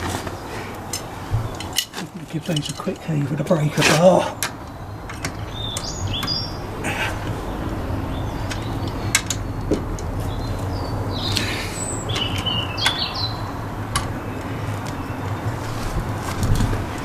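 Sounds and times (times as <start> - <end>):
birds chirping: 0.0 - 17.0
steady low rumble: 4.4 - 17.0.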